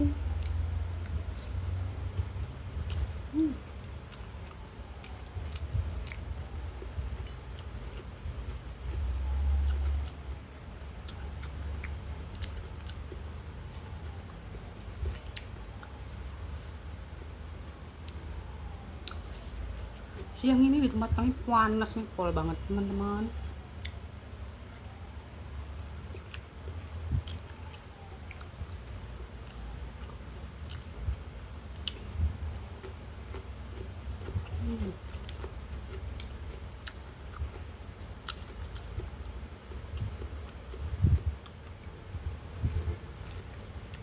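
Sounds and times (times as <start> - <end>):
chewing and biting: 3.8 - 17.3, 26.0 - 44.0.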